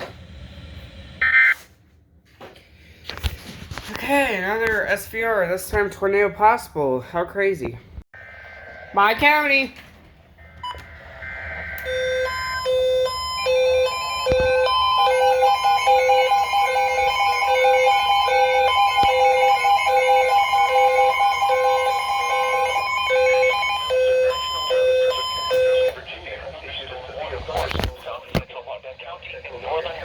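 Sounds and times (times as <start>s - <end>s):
repeating alarm beep: 10.6s - 25.9s
two-tone attention signal: 10.6s - 25.9s.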